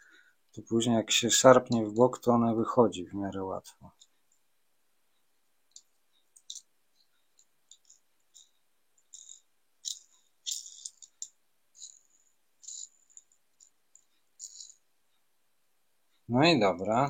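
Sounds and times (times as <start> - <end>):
plastic wheels clicking and rattling: 9.1 - 14.8.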